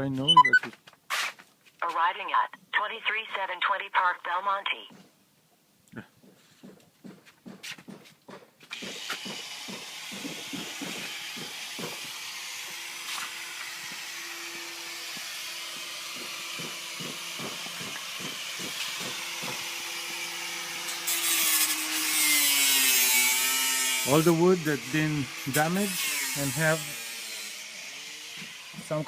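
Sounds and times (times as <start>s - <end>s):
power tool humming: 8.7s - 29.0s.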